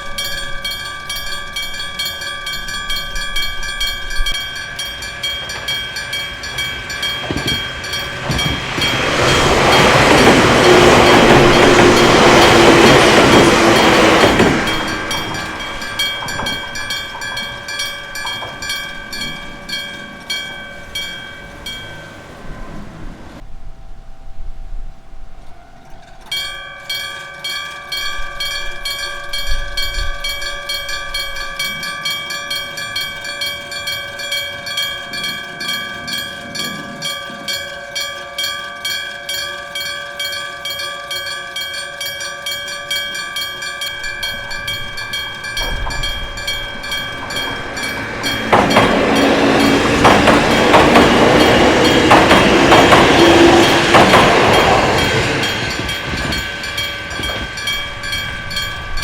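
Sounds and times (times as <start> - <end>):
level crossing bell ringing: 0.0 - 23.0, 25.6 - 59.0
train wheels clattering on rails: 0.0 - 23.5, 25.8 - 59.0.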